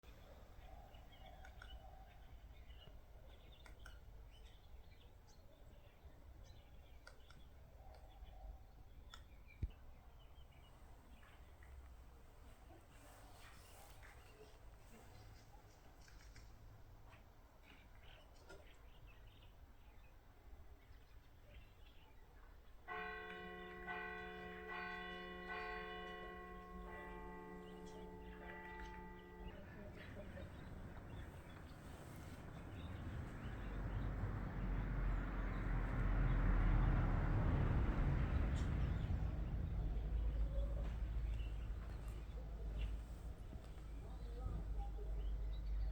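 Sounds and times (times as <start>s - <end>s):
woodpecker pecking clicks: 16.0s - 16.6s
bells ringing: 23.3s - 31.4s.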